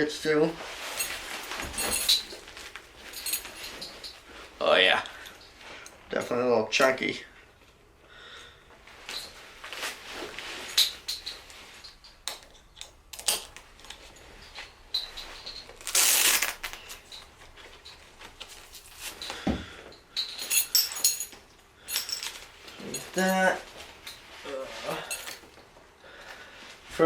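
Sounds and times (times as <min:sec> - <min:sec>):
straps and webbing rustling: 0:00.0 - 0:06.5, 0:08.8 - 0:27.0
light metal clinks: 0:00.8 - 0:04.4, 0:10.6 - 0:15.9, 0:16.7 - 0:25.6.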